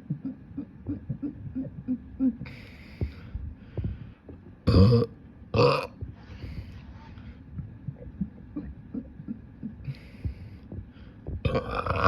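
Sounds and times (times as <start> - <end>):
faint breath: 2.4 - 4.3, 9.8 - 11.3
person belching: 4.7 - 6.0, 11.5 - 12.0.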